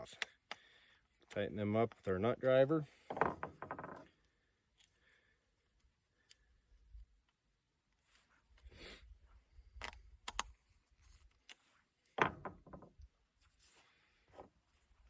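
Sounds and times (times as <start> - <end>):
sharp clicks: 9.8 - 10.5.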